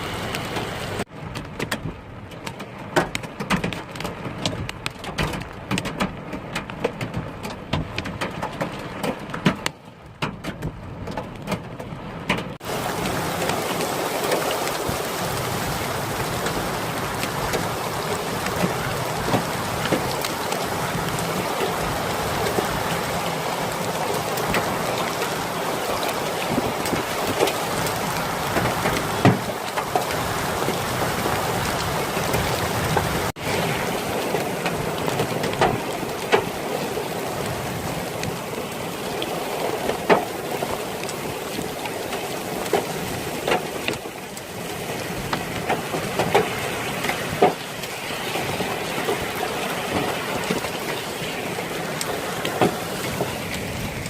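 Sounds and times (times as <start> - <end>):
raindrops tapping a surface: 0.0 - 54.0
heavy rain hissing: 12.6 - 54.0.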